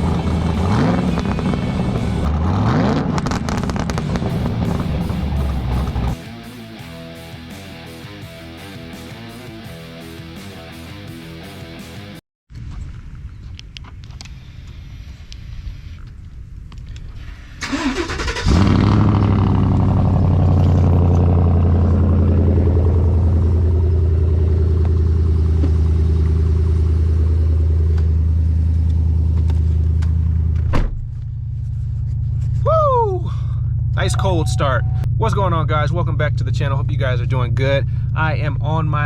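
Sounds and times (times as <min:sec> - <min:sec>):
truck engine idling: 0:19.5 - 0:30.5.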